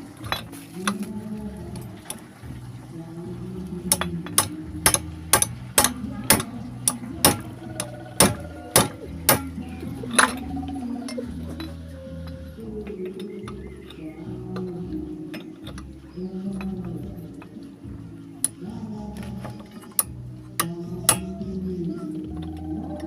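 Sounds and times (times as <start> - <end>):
metallic tapping metal on metal: 3.9 - 10.4, 19.4 - 21.5.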